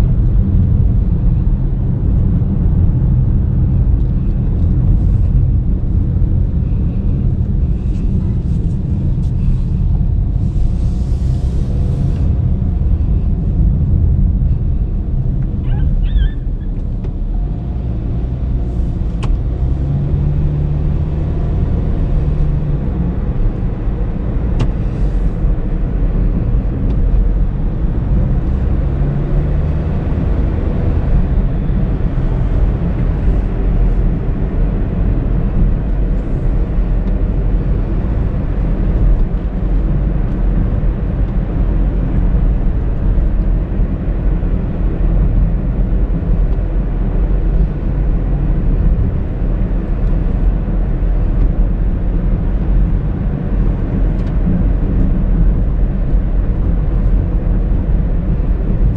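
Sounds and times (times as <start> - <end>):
car engine rumble: 0.0 - 58.9
road noise: 0.0 - 58.9.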